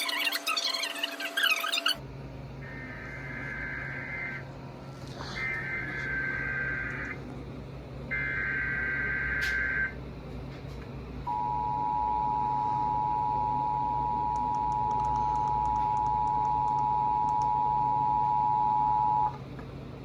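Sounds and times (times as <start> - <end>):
buzzy data tone: 2.6 - 4.4
two-tone attention signal: 11.3 - 19.4.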